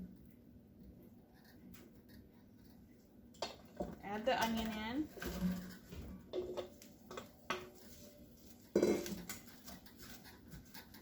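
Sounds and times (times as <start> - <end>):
kitchenware knocking against pan: 8.7 - 9.4.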